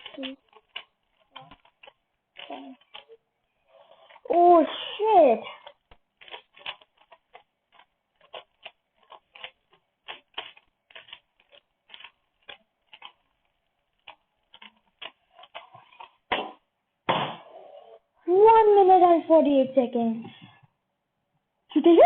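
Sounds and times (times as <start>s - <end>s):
plastic puzzle cube clicking: 0.0s - 3.2s, 5.5s - 16.3s.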